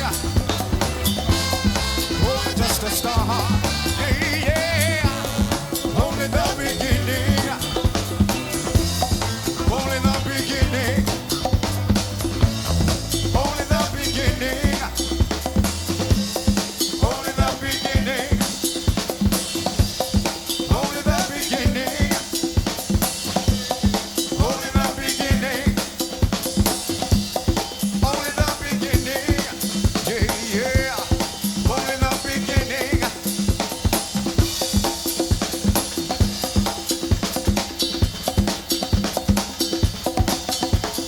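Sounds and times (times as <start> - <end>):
bass line: 0.0 - 16.1
drum kit beat: 0.0 - 41.0
live band playing: 0.0 - 41.0.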